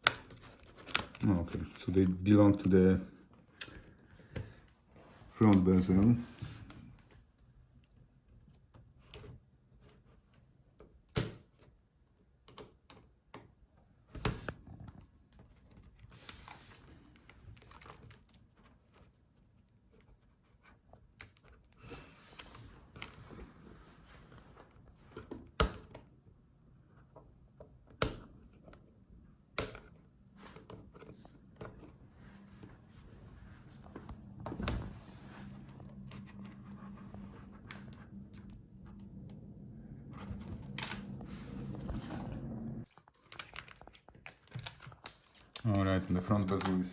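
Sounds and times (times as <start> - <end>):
plastic clicks and snaps: 46.4 - 46.9.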